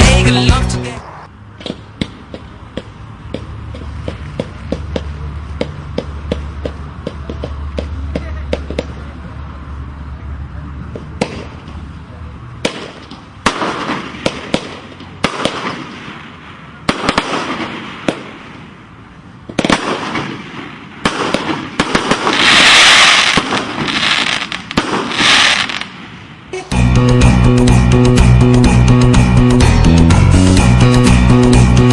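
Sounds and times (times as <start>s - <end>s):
fireworks crackling: 0.0s - 9.6s, 12.6s - 26.7s
fireworks bangs: 10.8s - 11.9s, 12.6s - 26.7s.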